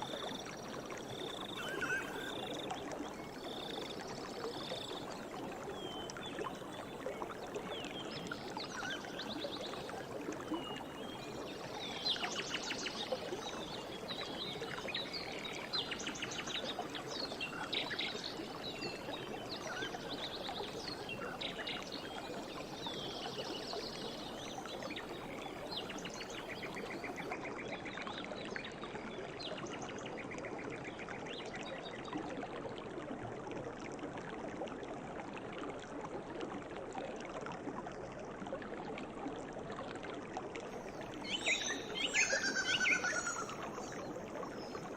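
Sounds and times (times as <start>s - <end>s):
stream running: 0.0s - 44.9s
birds calling and trilling: 1.4s - 2.5s, 41.3s - 43.6s.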